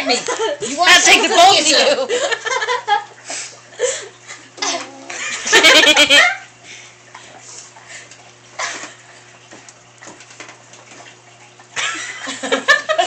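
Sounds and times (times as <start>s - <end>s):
baby grunting while eating: 4.6s - 5.2s.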